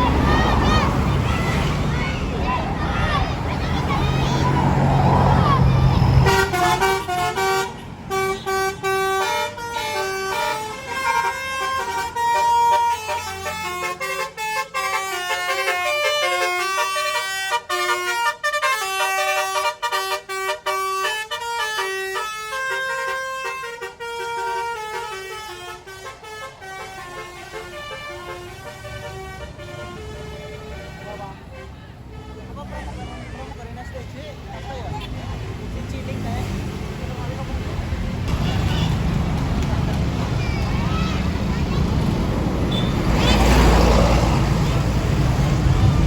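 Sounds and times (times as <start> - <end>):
bus engine running: 0.0 - 15.3, 22.6 - 46.0
musical air horn honking a tune: 6.2 - 32.5.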